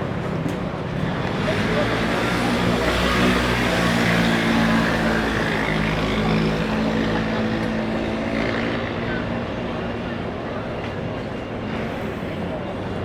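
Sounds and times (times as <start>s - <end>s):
crowd noise: 0.0s - 13.0s.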